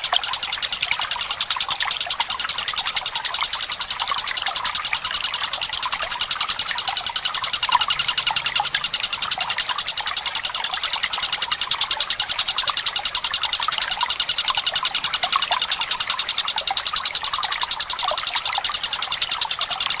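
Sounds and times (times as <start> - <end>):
trickling water: 0.0 - 20.0
kingfisher rolling trill: 4.9 - 16.2.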